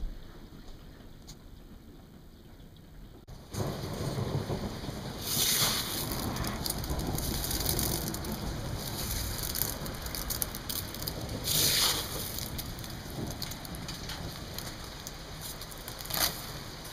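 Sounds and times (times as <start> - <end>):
hail and rain pelting down: 3.3 - 16.9.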